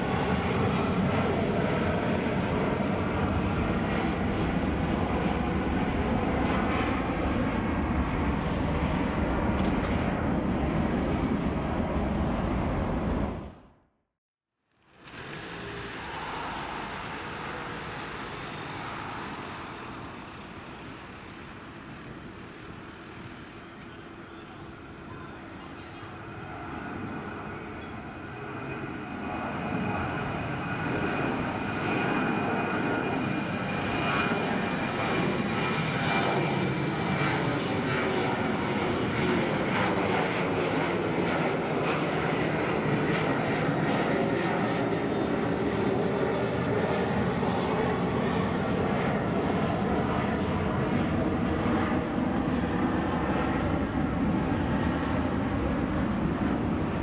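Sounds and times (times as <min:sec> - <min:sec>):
jet engines roaring: 0:00.0 - 0:13.7, 0:15.0 - 0:57.0.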